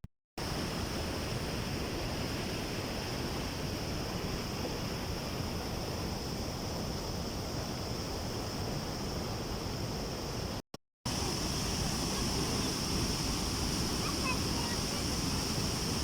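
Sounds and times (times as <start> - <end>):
waterfall rushing: 11.1 - 16.0.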